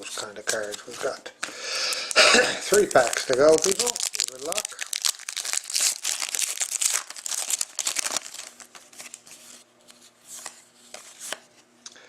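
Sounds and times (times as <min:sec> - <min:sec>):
wrapper tearing and crackling: 0:01.8 - 0:09.4.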